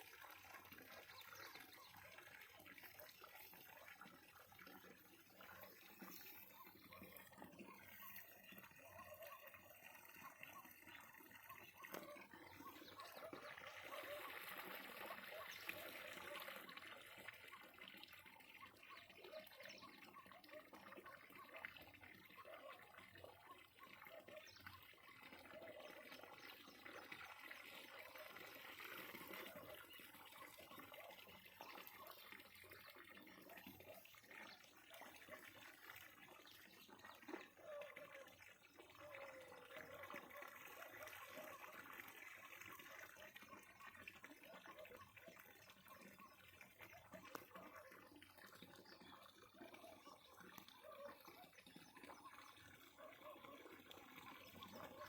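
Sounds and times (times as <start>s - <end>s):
water trickling and splashing: 0.0s - 55.0s
small irregular ticks: 45.6s - 51.1s.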